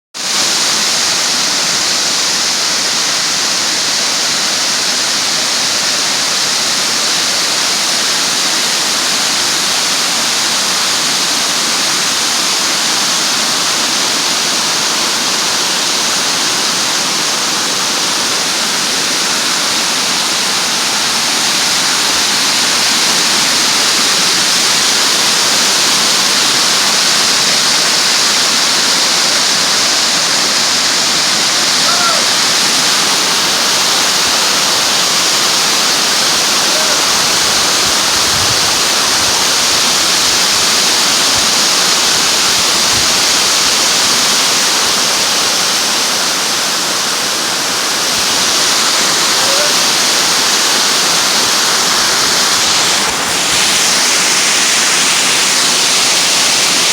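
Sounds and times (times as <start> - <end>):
falling water rushing: 0.2 - 56.9.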